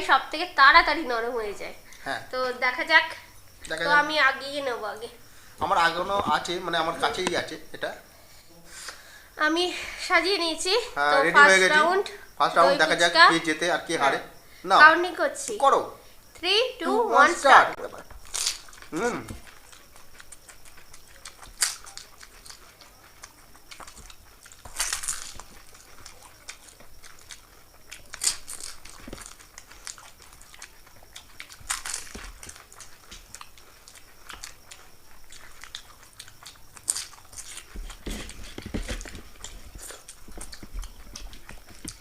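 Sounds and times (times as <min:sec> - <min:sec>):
crunching crisp shells: 0:18.0 - 0:42.0
wet chewing: 0:18.0 - 0:42.0.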